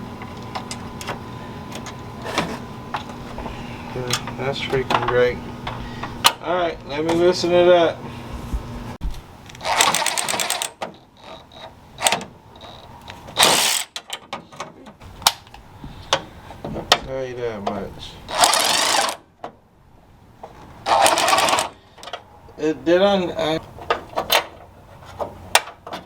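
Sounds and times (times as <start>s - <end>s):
ratchet wrench clicking: 13.4s - 14.0s.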